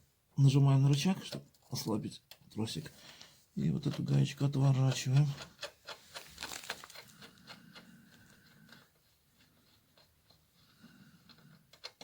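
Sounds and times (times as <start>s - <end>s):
faint clicks of nut unscrewing: 4.9s - 12.0s.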